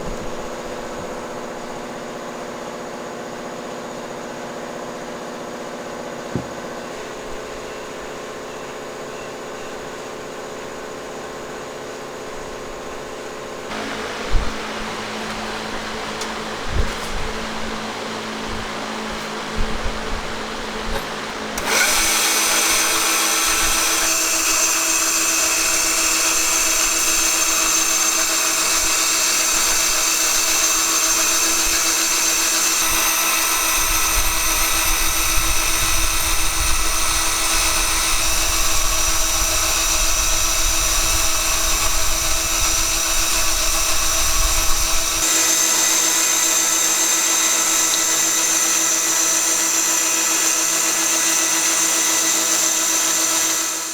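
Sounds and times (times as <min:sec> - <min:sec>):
power tool motor whine: 0:13.6 - 0:53.9.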